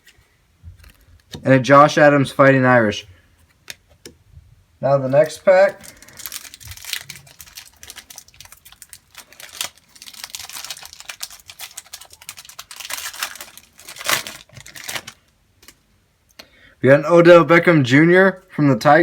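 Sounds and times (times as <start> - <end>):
foil wrapper tearing and crinkling: 5.2 - 15.8.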